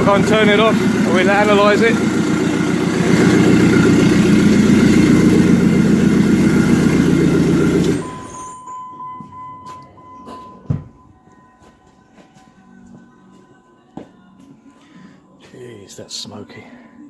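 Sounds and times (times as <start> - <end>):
car engine idling: 0.0 - 8.4
faint steady high tone: 8.0 - 13.0.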